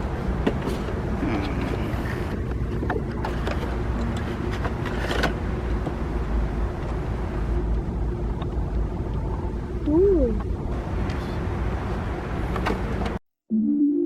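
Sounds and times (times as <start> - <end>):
car engine droning: 0.0 - 13.2.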